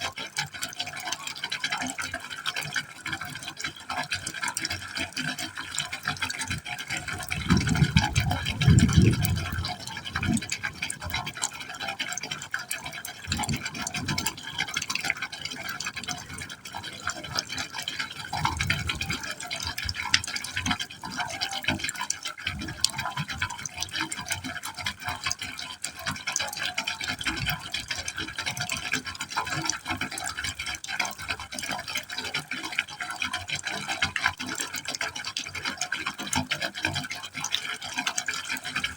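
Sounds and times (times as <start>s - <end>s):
water splashing and gurgling into pipe: 0.0s - 38.9s.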